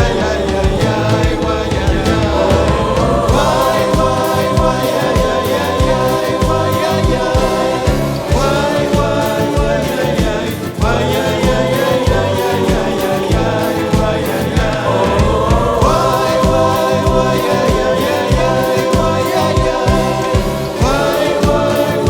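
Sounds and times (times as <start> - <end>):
choir singing long notes: 0.0 - 22.0
rhythmic percussion: 0.0 - 22.0.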